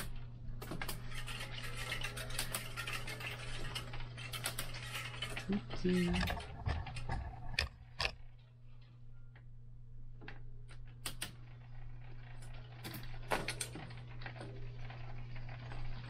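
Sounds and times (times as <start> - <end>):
bicycle parts and tools clicking: 0.0 - 8.4
steady low hum: 0.0 - 15.1.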